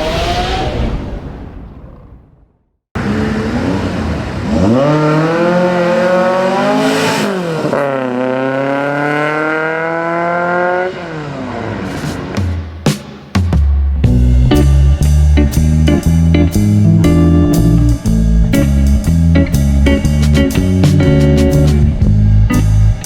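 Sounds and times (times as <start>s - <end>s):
car engine accelerating hard: 3.0s - 12.4s.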